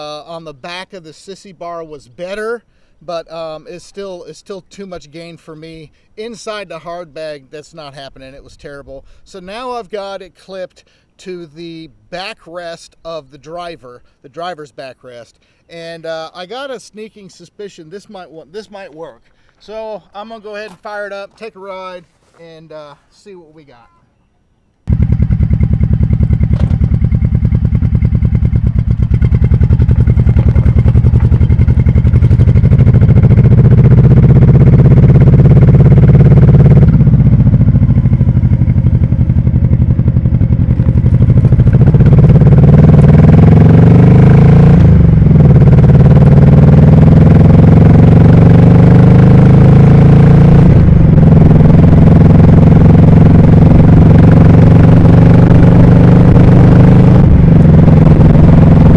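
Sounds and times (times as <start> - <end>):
motorcycle engine accelerating: 24.9 - 58.9.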